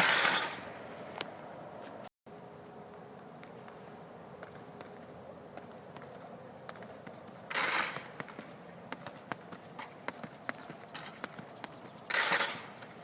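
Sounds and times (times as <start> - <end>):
spike footsteps on track: 4.4 - 13.0.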